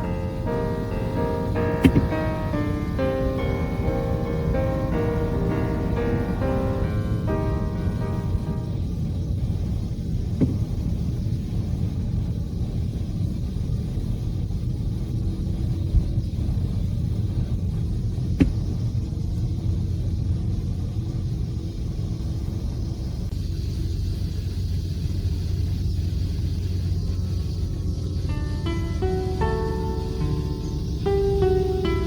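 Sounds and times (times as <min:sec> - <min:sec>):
faint steady hum: 0:00.0 - 0:32.0
ship engines rumbling: 0:00.0 - 0:32.0
short sharp knocks: 0:01.8 - 0:02.1.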